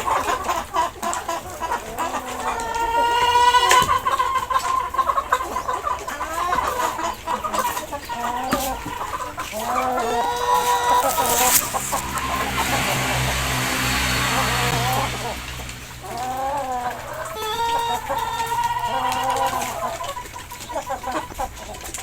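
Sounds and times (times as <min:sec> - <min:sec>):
chickens clucking: 0:00.0 - 0:22.0
low hum and hiss: 0:09.8 - 0:19.0.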